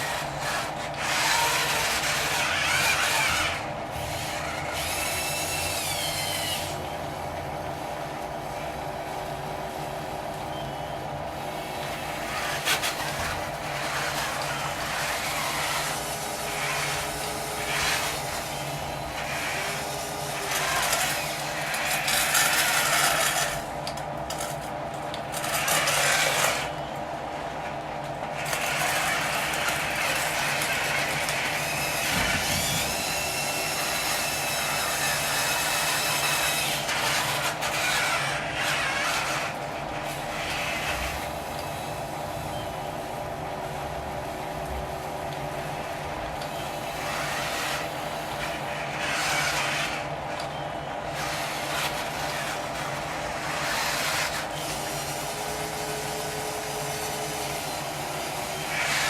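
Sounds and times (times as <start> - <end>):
scraping and grinding: 0.0 - 6.7, 11.9 - 26.9, 28.3 - 41.3, 46.9 - 50.5, 51.1 - 56.2
electric motor and hydraulic whine: 0.0 - 43.9, 44.7 - 59.0.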